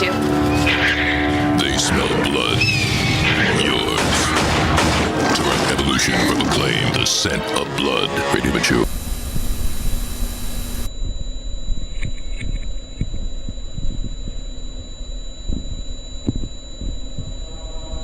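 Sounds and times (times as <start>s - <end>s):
high-pitched whine: 0.0s - 18.0s
television static: 1.4s - 10.9s
low hum: 8.8s - 18.0s
crackles and pops: 11.8s - 17.4s.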